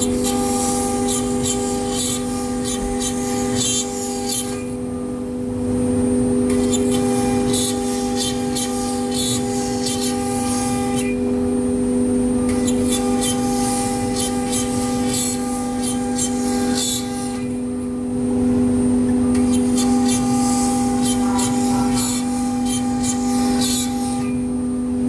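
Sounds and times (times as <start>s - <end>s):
cutting machine whine: 0.0s - 25.0s
high hissy cutting noise: 19.5s - 24.0s.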